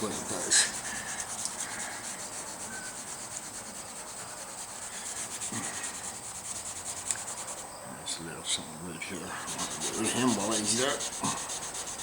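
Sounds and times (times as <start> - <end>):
wet sandpaper rubbing on paint: 0.0 - 7.7, 9.1 - 12.0.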